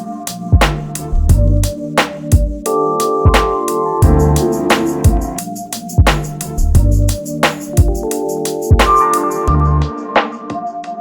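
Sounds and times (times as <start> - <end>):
electronic music: 2.6 - 10.1.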